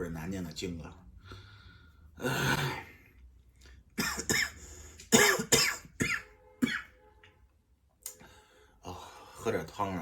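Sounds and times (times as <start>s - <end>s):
man clearing throat: 4.0s - 6.9s
man coughing harshly: 4.0s - 6.9s.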